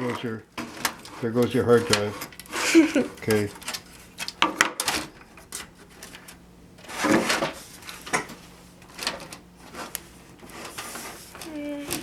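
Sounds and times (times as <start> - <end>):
rubbing scrape: 6.8 - 7.8, 9.6 - 12.0.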